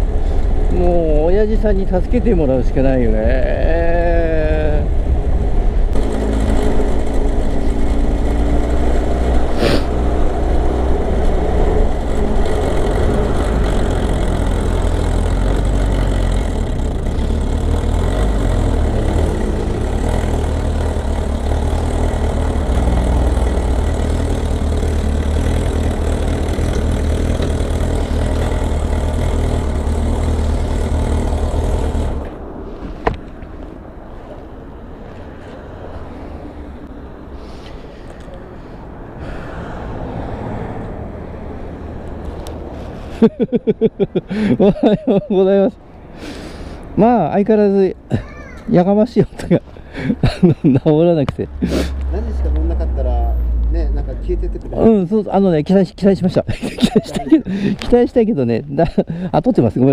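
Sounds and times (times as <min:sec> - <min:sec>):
motorcycle engine running: 0:06.0 - 0:32.3.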